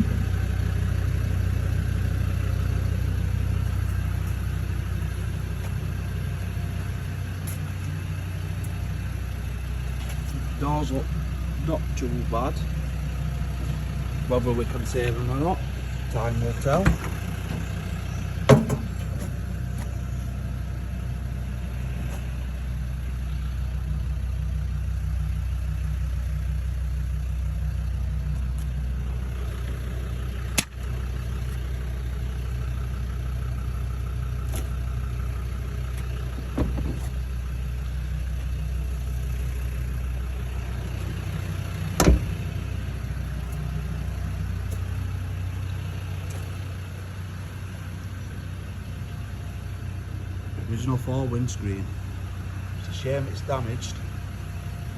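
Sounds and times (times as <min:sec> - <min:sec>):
vehicle engine idling: 0:00.0 - 0:54.9.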